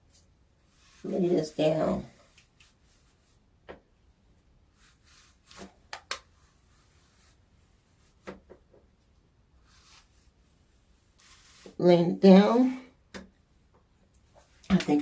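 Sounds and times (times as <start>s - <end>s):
hands rubbing hair: 0.0s - 3.6s, 4.7s - 8.9s, 9.6s - 12.0s.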